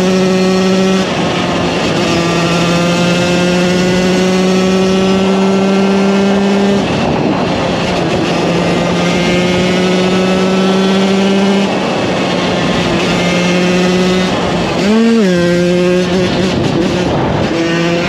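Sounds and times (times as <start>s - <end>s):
two-stroke engine running under load: 0.0s - 18.0s.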